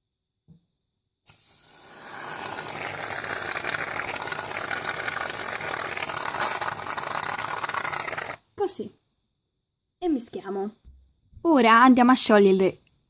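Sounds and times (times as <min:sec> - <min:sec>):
aerosol foam spraying: 0:01.3 - 0:05.4.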